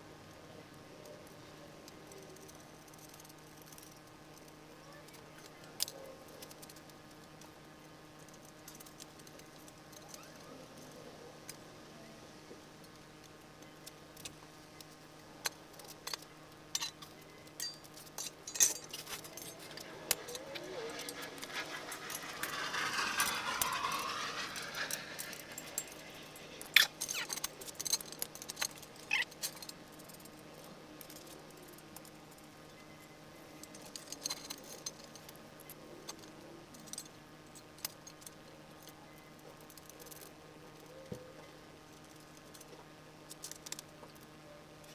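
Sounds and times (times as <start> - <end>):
metal scraping: 17.6 - 28.2.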